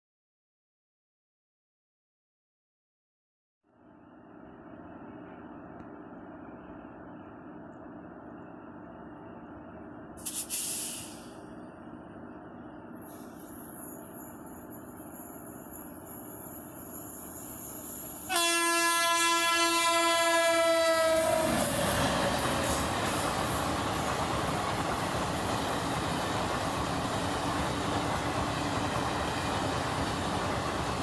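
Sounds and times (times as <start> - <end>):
locomotive horn blast: 18.3 - 22.0
train rushing past: 18.3 - 31.0.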